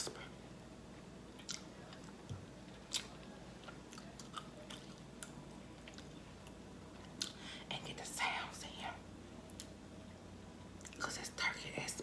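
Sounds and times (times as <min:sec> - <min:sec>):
person chewing food: 0:01.4 - 0:07.4.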